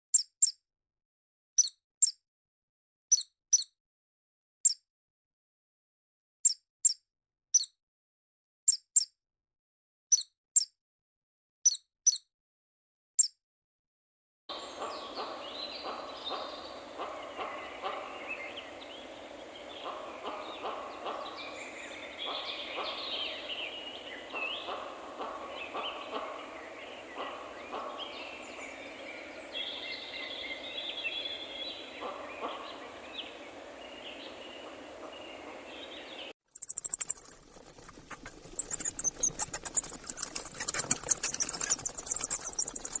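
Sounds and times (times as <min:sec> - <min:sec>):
small bird calls: 0:14.5 - 0:43.0
mice squeaking: 0:36.4 - 0:43.0
close scratching and rustling: 0:36.6 - 0:43.0.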